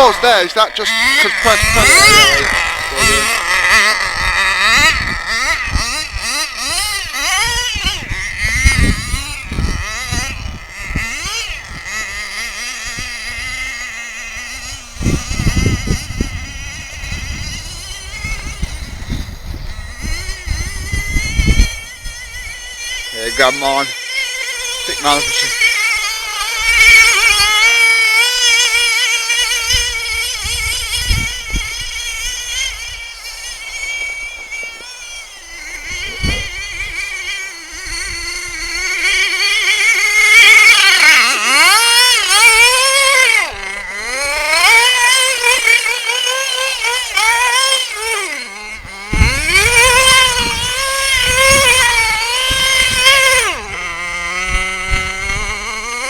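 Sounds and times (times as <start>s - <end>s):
rc nitro engine revving: 0.0s - 56.0s
low thuds: 35.8s - 36.8s.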